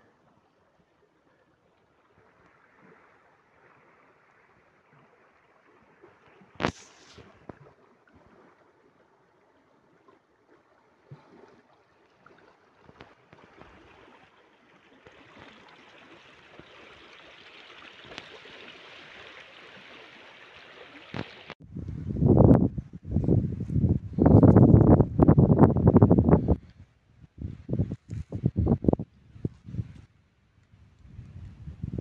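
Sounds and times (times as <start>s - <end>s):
water rushing: 0.1s - 21.6s
wind buffeting microphone: 21.6s - 30.1s, 30.8s - 32.0s.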